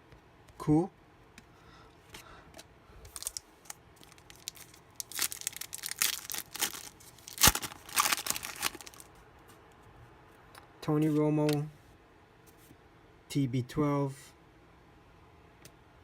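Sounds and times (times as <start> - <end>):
wrapper tearing and crinkling: 3.1 - 9.1.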